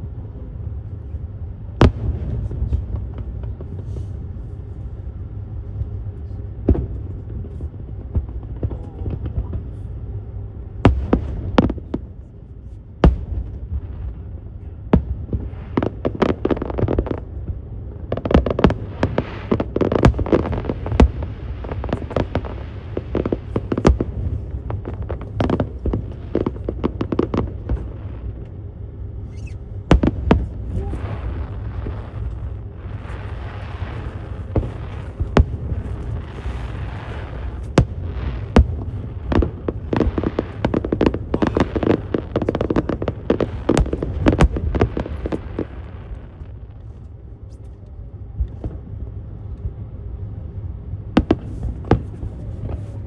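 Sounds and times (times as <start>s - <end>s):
low rumble: 0.0s - 53.0s
fireworks bursting: 13.0s - 46.9s.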